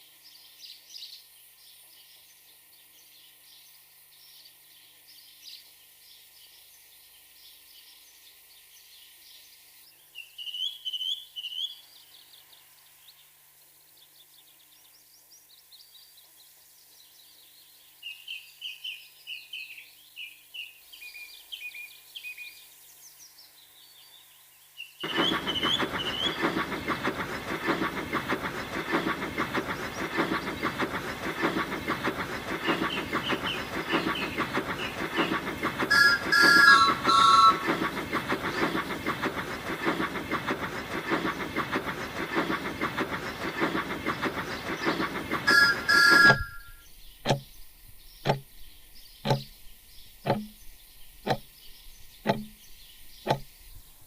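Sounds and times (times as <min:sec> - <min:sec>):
bird chirps: 0:24.8 - 0:53.8
steam locomotive chuffing: 0:25.0 - 0:54.0
train whistle: 0:35.9 - 0:37.8, 0:45.5 - 0:46.8
sharp knocks: 0:47.2 - 0:47.5, 0:48.3 - 0:48.6, 0:49.3 - 0:49.6, 0:50.3 - 0:50.6, 0:51.3 - 0:51.5, 0:52.3 - 0:53.5.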